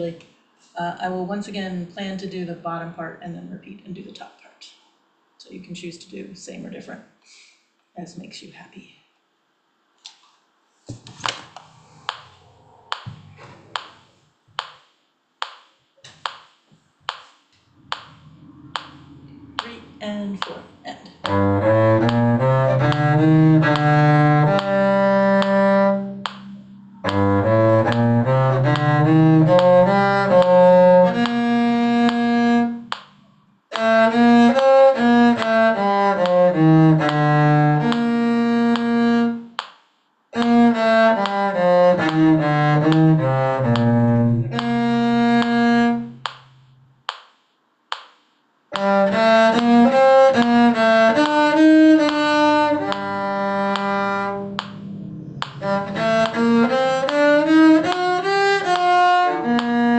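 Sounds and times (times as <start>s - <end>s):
cello bowed melody: 17.7s - 39.5s, 40.4s - 46.8s, 48.7s - 59.9s.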